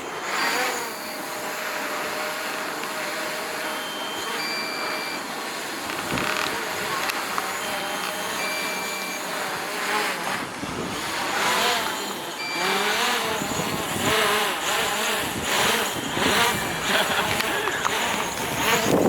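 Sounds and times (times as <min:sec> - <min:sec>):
drone propellers whining: 0:00.0 - 0:19.0
short high beeps: 0:03.6 - 0:05.3, 0:07.4 - 0:09.4, 0:12.0 - 0:13.9
wind noise on microphone: 0:05.8 - 0:08.4, 0:09.8 - 0:11.8, 0:12.6 - 0:19.0.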